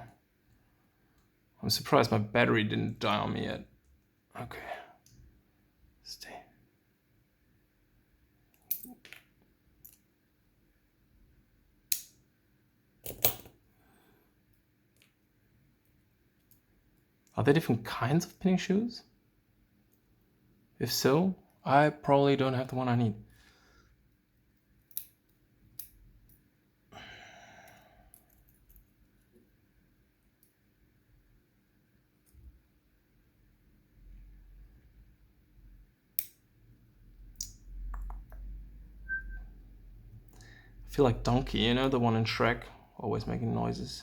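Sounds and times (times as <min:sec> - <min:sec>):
small lock parts clicking: 0:13.0 - 0:13.6, 0:24.8 - 0:26.4, 0:36.2 - 0:36.4
person sighing: 0:26.9 - 0:28.0.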